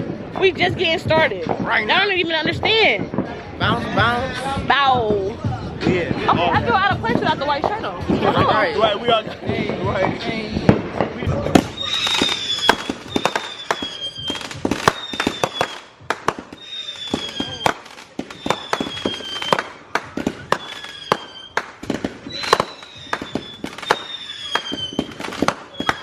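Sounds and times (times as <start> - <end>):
fireworks popping and banging: 0.0 - 26.0
high falling firework whistle: 11.6 - 26.0.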